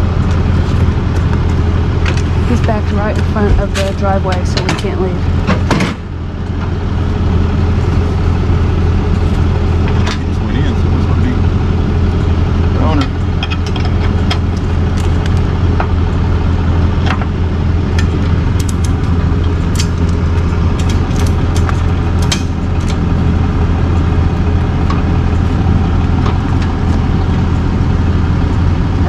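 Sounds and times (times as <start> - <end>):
truck engine idling: 0.0 - 29.0.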